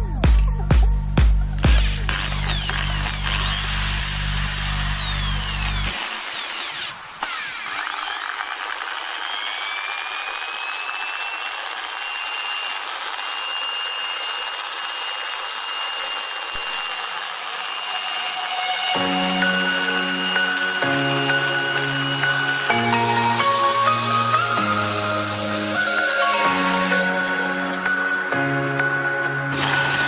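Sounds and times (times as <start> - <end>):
electronic music: 0.0 - 6.0, 18.6 - 30.0
electric drill whining: 1.5 - 30.0.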